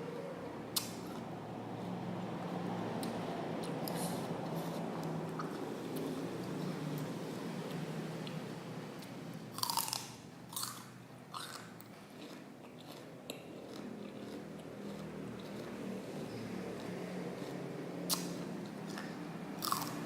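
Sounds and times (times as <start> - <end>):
celery crunching: 11.4 - 15.9.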